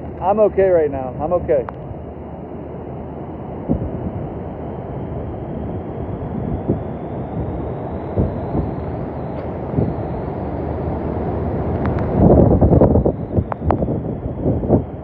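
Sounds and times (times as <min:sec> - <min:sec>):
strong wind on microphone: 0:03.4 - 0:15.0.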